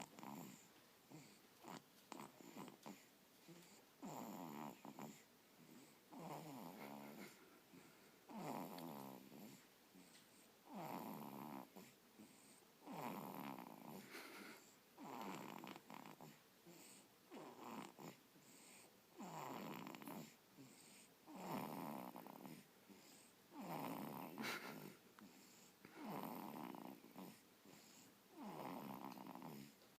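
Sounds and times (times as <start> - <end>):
person snoring: 4.0 - 9.6, 19.2 - 29.7.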